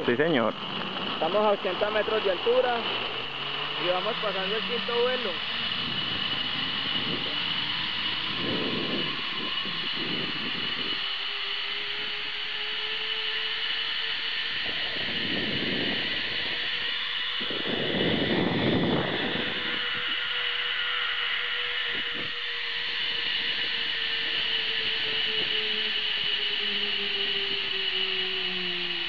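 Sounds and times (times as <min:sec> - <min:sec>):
wind noise on microphone: 0:00.0 - 0:12.6, 0:14.0 - 0:29.0
zipline pulleys whining on cable: 0:00.0 - 0:29.0.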